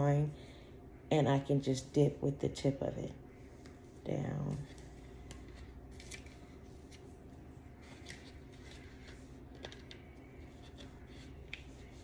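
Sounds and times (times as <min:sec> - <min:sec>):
low room hum: 0:00.0 - 0:12.0
scratchy hair rustles: 0:03.4 - 0:12.0.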